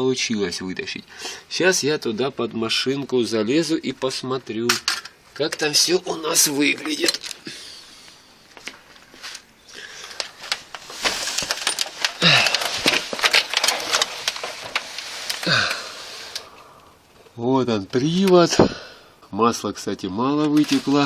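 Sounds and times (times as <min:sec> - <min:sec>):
rustling and scraping under car: 0:10.2 - 0:15.5.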